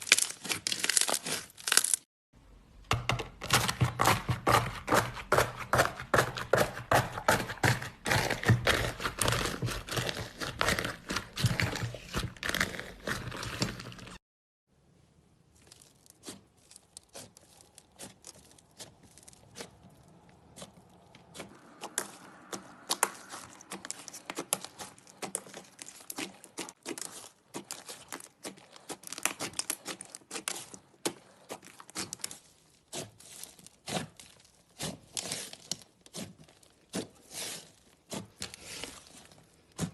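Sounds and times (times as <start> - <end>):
slime crackling and popping: 0.0 - 2.0, 22.9 - 37.0.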